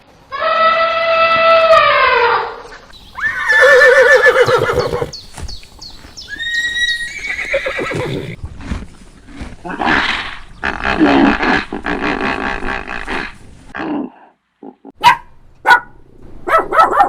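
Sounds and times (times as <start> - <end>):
horse whinnying: 3.2 - 5.2, 6.2 - 8.4.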